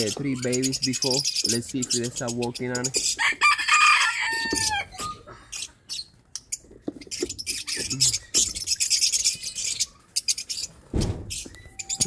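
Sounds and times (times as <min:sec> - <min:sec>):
lovebirds chirping: 0:00.0 - 0:12.0
rooster crowing: 0:03.2 - 0:05.0.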